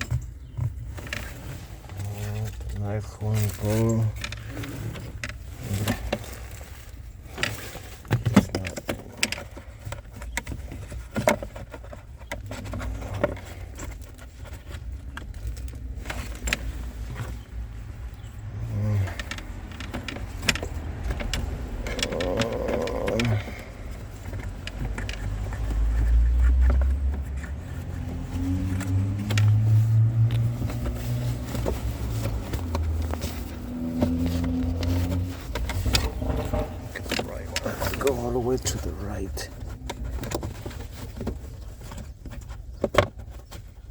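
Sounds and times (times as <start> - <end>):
low rumble: 26.7 - 40.1.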